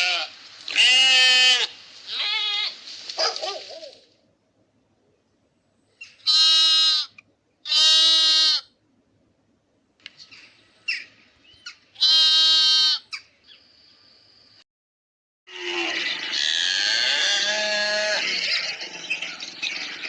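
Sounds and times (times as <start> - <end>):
sheep bleating: 0.0 - 2.8, 6.3 - 8.7, 12.0 - 13.0, 15.5 - 18.4.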